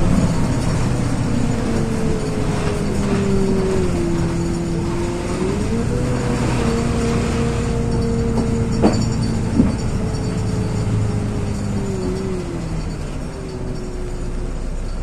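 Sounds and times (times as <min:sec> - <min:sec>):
bus drivetrain hum and whine: 0:00.0 - 0:15.0.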